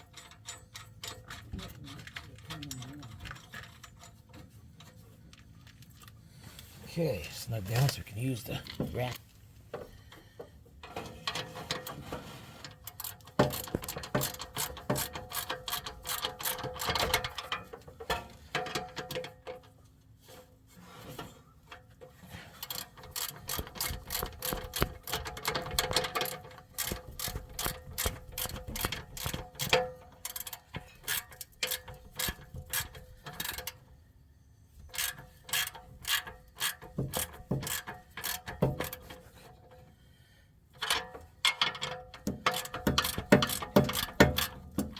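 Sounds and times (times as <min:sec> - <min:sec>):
ratchet wrench clicking: 0:13.0 - 0:17.4, 0:22.6 - 0:33.6, 0:34.9 - 0:39.0, 0:41.7 - 0:44.9.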